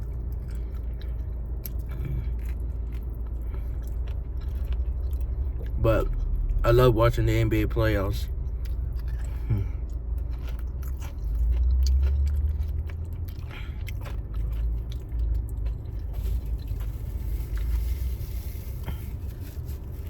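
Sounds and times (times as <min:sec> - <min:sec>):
person chewing food: 0:00.0 - 0:06.6, 0:08.3 - 0:20.0
steady low rumble: 0:00.0 - 0:20.0.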